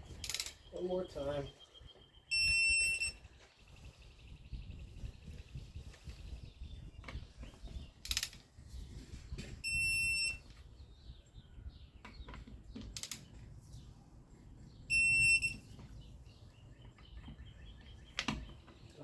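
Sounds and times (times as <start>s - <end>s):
torque wrench high beep: 2.3s - 3.2s, 9.6s - 10.4s, 14.9s - 15.6s.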